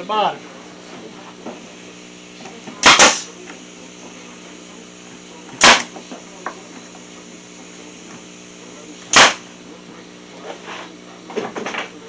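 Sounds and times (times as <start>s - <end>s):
staple gun firing into wood: 2.8s - 3.4s, 5.6s - 6.0s, 9.1s - 9.5s.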